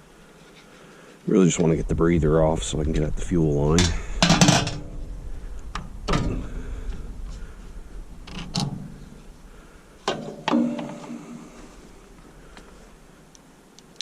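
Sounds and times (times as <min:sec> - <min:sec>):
hand tools clicking and clanking: 0:03.8 - 0:04.9, 0:10.0 - 0:11.4
sharp knocks: 0:10.0 - 0:11.5.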